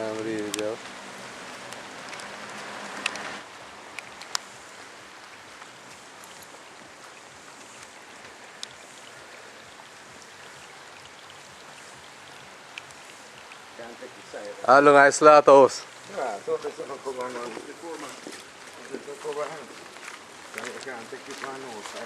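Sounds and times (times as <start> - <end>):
water hissing: 0.0 - 22.0
sharp ticks: 1.6 - 4.6, 7.2 - 9.3, 11.1 - 14.4.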